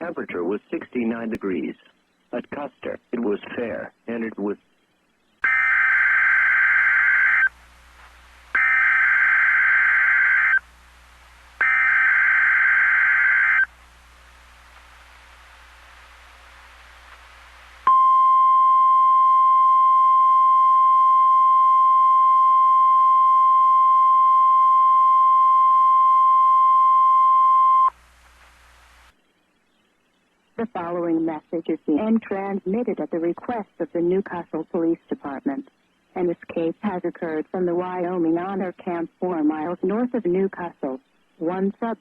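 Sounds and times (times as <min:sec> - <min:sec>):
steady alarm tone: 0:08.6 - 0:10.6, 0:11.6 - 0:13.7
faint hiss: 0:13.5 - 0:17.9.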